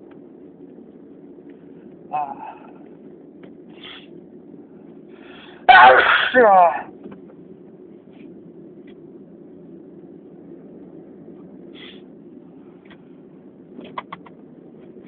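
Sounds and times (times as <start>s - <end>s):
low background hum: 0.0s - 15.0s
breathy sniff: 3.7s - 4.1s, 11.7s - 12.1s.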